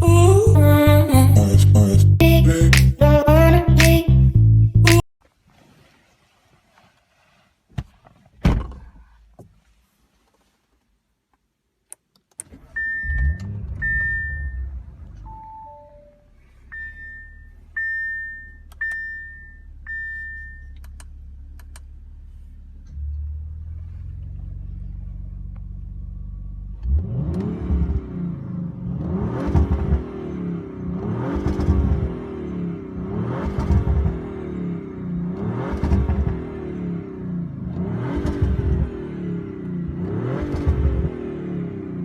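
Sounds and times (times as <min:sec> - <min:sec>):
car engine starting and idling: 0:00.0 - 0:05.0, 0:11.9 - 0:42.0
car electronic chimes beeping: 0:12.6 - 0:20.9
engine revving: 0:12.8 - 0:15.4, 0:22.8 - 0:42.0.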